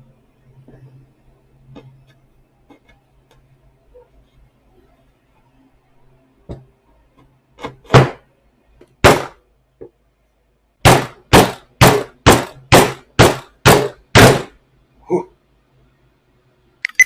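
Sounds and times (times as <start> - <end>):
hard hammer blows: 10.8 - 14.6.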